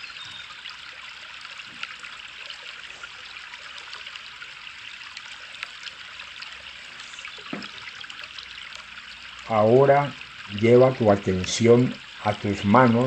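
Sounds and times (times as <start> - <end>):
water trickling and bubbling: 0.0 - 13.0.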